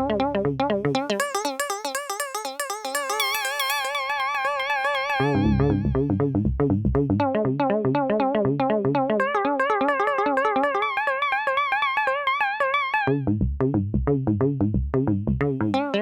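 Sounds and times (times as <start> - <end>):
plucked synth notes: 0.0 - 13.8, 14.5 - 16.0
synth lead tone with vibrato: 1.0 - 6.3, 9.2 - 13.2
synth bass line: 1.0 - 7.4, 8.9 - 16.0.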